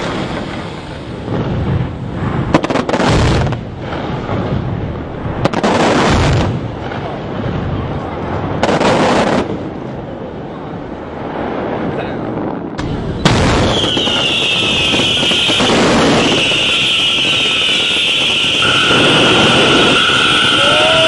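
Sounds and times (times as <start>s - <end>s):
fireworks bangs: 0.0s - 9.8s, 11.1s - 21.0s
steady low rumble: 0.0s - 13.6s.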